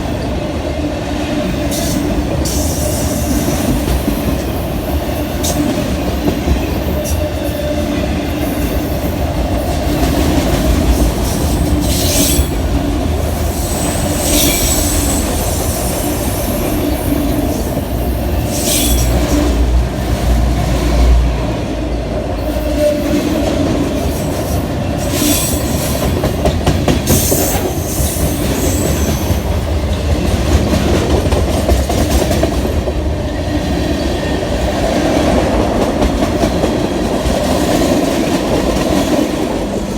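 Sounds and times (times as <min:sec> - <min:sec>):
train wheels rumbling on rail: 0:00.0 - 0:39.9
high-pitched wheel squeals: 0:13.5 - 0:16.5, 0:18.5 - 0:19.2.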